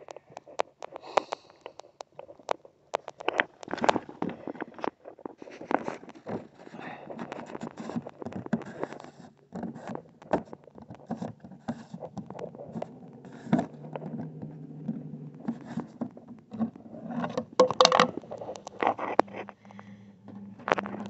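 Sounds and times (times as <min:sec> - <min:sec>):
plastic kayak knocks and scrapes: 0:05.6 - 0:19.6.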